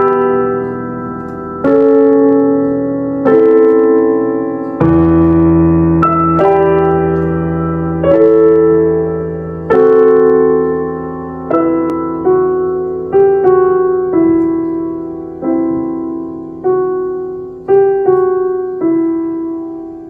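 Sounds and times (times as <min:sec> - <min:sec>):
slow gentle piano piece: 0:00.0 - 0:20.0.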